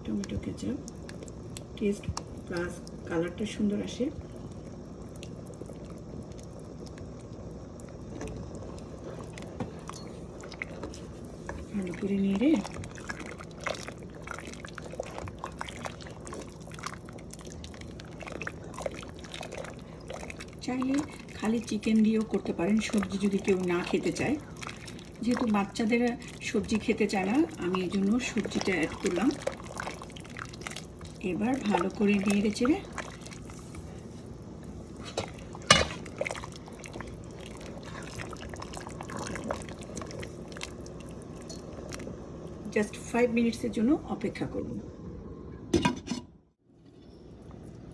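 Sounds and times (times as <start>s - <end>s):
soup sloshing in a pot: 4.2s - 42.1s.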